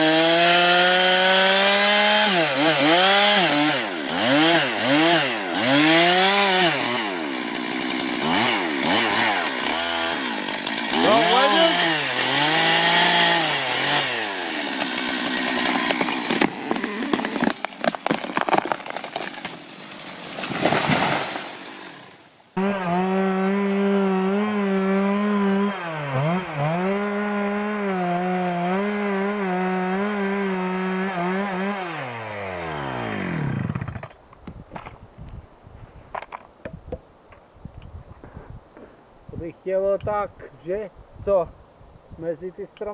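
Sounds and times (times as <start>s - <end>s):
chainsaw engine revving: 0.0s - 17.6s, 20.4s - 34.1s
chainsaw sawing at full throttle: 0.0s - 18.1s, 19.2s - 34.0s.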